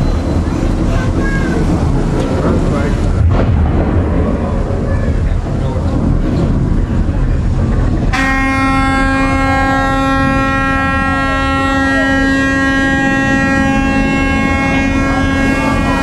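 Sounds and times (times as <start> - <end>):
low rumble: 0.0 - 16.0
loud steady horn: 8.1 - 16.0.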